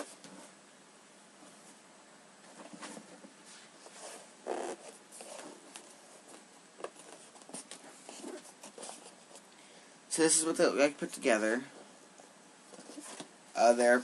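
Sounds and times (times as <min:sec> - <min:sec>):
rustling and scraping handling noise: 0:00.0 - 0:00.6, 0:01.3 - 0:09.6, 0:11.3 - 0:13.4.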